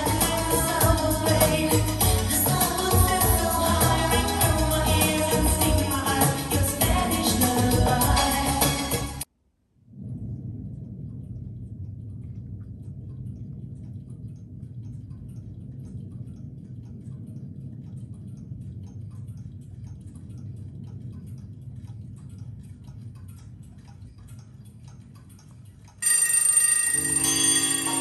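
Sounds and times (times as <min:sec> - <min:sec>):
music: 0:00.0 - 0:09.3
steady low hum: 0:00.0 - 0:26.0
many clocks ticking: 0:14.3 - 0:28.0.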